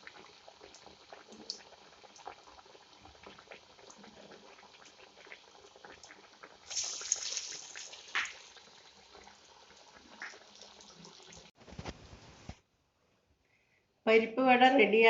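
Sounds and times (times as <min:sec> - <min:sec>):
fritters sizzling in hot oil: 0:06.6 - 0:11.5.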